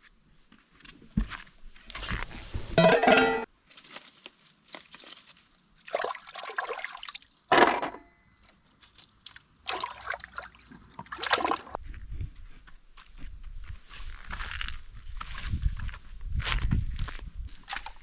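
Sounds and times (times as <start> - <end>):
water splashing and sloshing: 2.4 - 11.8.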